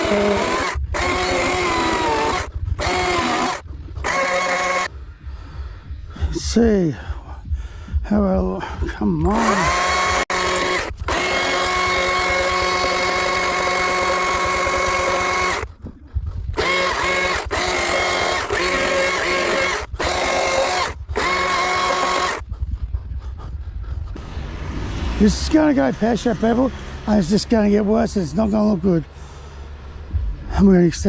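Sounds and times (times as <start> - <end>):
chainsaw cutting wood: 0.0 - 4.9, 9.2 - 15.8, 16.6 - 22.4.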